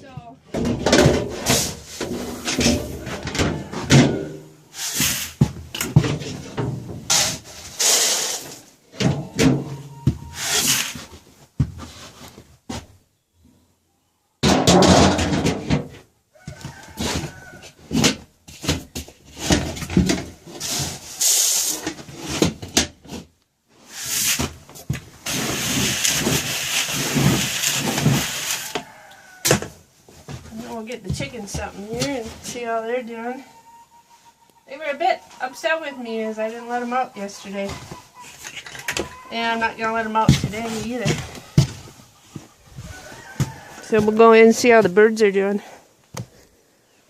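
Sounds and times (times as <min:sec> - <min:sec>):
handling and movement noise: 0:15.2 - 0:32.8, 0:35.2 - 0:46.5
chickens clucking: 0:31.3 - 0:44.9.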